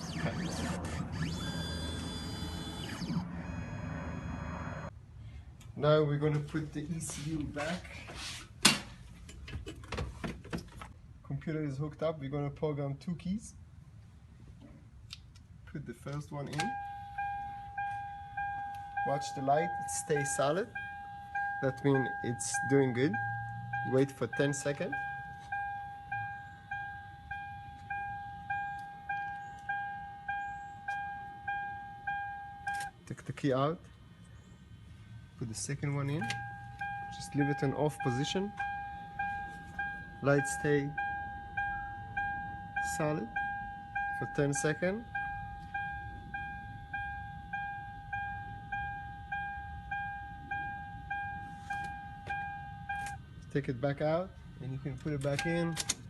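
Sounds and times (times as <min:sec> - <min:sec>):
car key reminder chime dinging: 0:16.6 - 0:32.9, 0:36.2 - 0:53.2.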